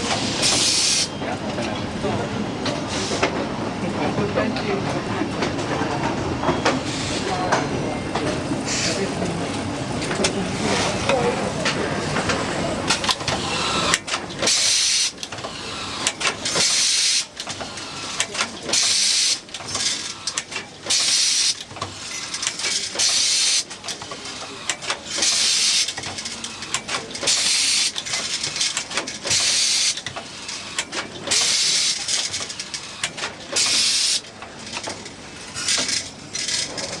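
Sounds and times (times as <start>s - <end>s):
machine hiss bursts: 0.1s - 1.1s, 13.5s - 15.2s, 16.0s - 17.3s, 18.7s - 19.4s, 20.1s - 21.6s, 23.0s - 23.7s, 25.1s - 26.0s, 27.3s - 28.0s, 29.3s - 30.0s, 33.6s - 34.3s
machine clicking: 11.1s - 37.0s.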